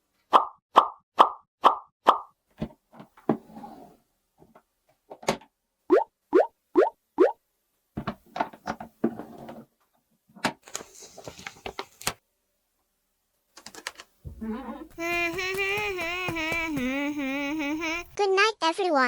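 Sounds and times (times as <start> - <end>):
plastic toy pieces clicking: 13.6 - 14.1
person humming: 14.9 - 18.2.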